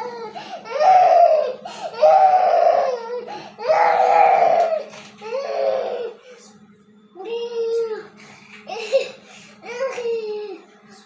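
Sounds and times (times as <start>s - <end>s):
young child crying: 0.0s - 6.2s.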